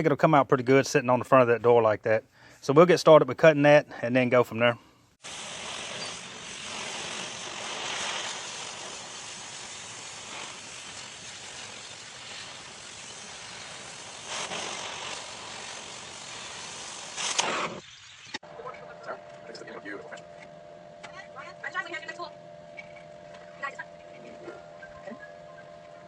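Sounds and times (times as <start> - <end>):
cutting torch hissing: 5.2 - 18.4.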